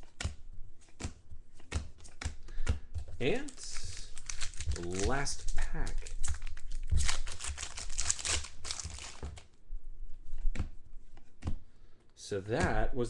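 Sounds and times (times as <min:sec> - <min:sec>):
soft clicks of cards handled: 0:00.0 - 0:06.5
foil wrapper tearing and crinkling: 0:03.2 - 0:09.4.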